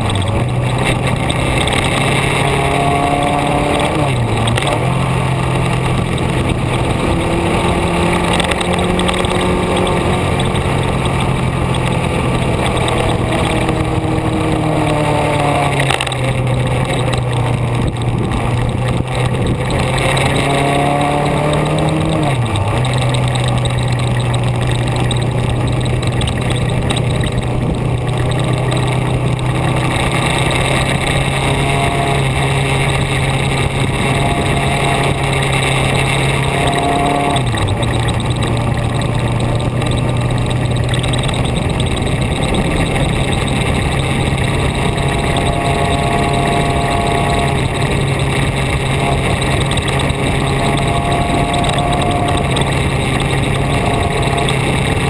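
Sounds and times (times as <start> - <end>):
vehicle engine running: 0.0 - 55.0
wind and road noise: 0.0 - 55.0.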